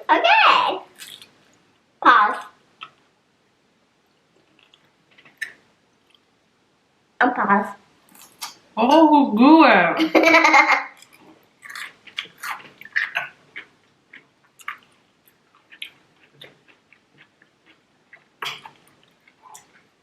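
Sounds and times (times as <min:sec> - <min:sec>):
person chewing food: 0:00.9 - 0:01.6, 0:04.1 - 0:06.3, 0:08.1 - 0:08.6, 0:10.9 - 0:20.0.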